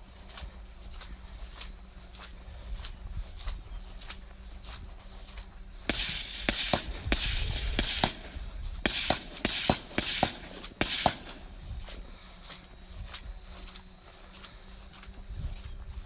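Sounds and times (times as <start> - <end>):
rapid gunshots: 5.9 - 11.6.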